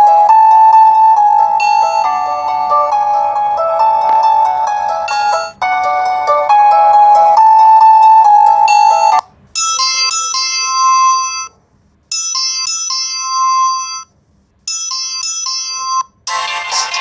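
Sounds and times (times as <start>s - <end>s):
busier phone alarm tone: 0.0s - 11.5s
phone alarm chime: 0.0s - 11.5s, 12.2s - 14.1s, 14.7s - 17.0s.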